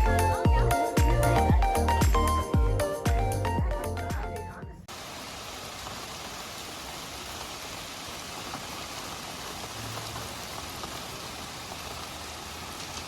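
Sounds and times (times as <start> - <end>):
steady rain-like hiss: 4.8 - 13.0.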